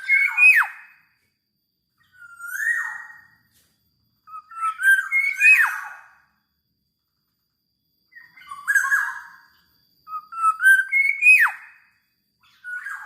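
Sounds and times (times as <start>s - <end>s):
bird fluting whistles: 0.0s - 1.0s, 2.2s - 3.4s, 4.3s - 6.2s, 10.1s - 13.0s.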